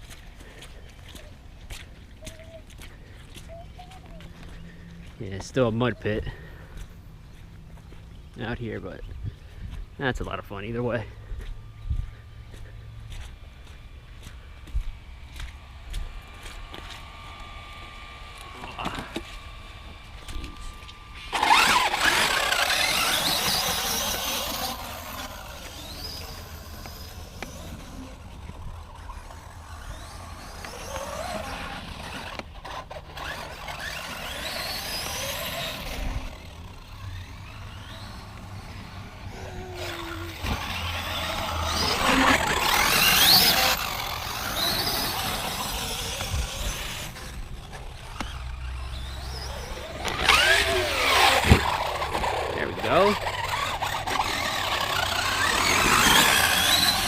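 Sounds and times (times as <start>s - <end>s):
drivetrain and tyre noise: 0.0s - 57.0s
electric motor whining: 11.5s - 57.0s.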